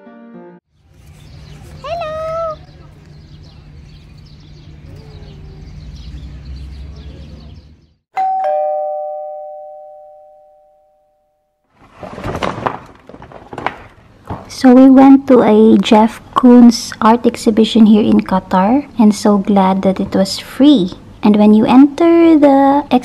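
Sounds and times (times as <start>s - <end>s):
two-note chime: 8.2s - 11.4s.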